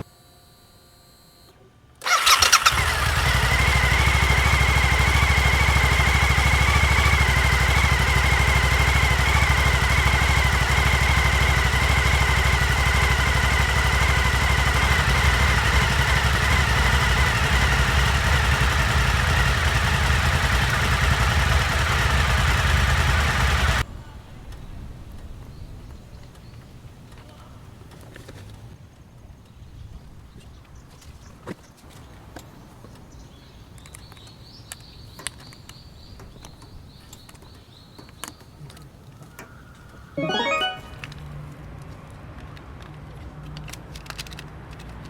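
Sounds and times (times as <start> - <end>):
motorcycle engine starting and running: 2.0 - 23.9.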